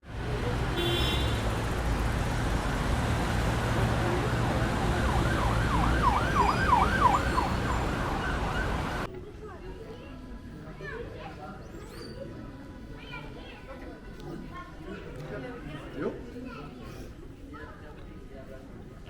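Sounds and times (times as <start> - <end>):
road traffic rumbling: 0.0 - 9.1
emergency siren yelping: 4.0 - 9.1.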